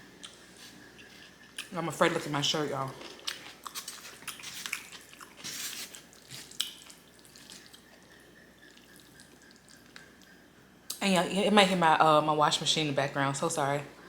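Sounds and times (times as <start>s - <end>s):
wet chewing and mouth sounds: 0.2s - 11.0s.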